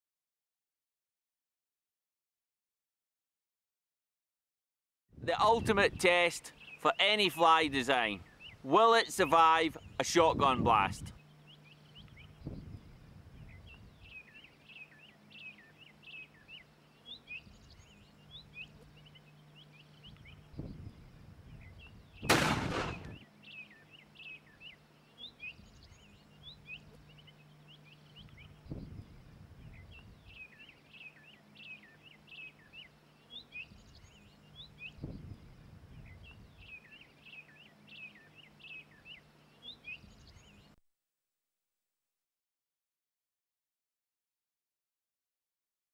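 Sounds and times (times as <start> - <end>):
birds chirping: 5.4 - 40.8
shotgun blast: 22.2 - 23.2.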